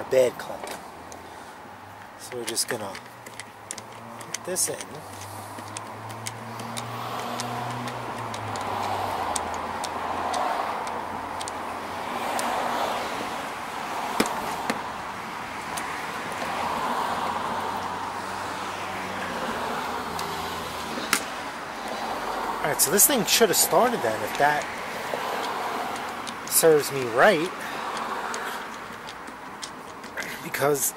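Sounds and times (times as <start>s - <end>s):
road traffic hiss: 0.0s - 30.9s.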